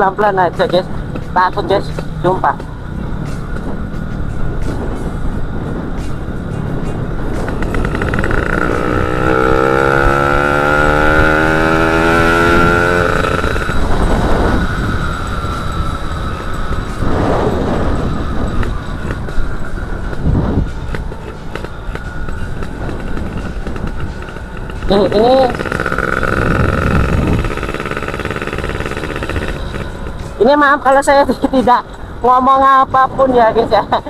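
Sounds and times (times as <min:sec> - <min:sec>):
wind rush: 0:00.8 - 0:34.0
motorcycle engine revving: 0:07.1 - 0:30.6.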